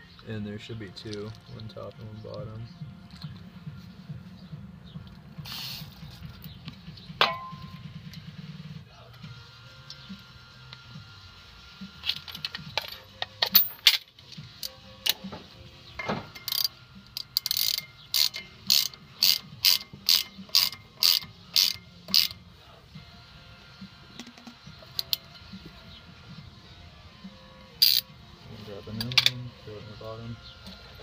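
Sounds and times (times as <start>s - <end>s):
ratchet wrench clicking: 16.4s - 22.4s, 24.2s - 25.3s, 27.8s - 28.1s.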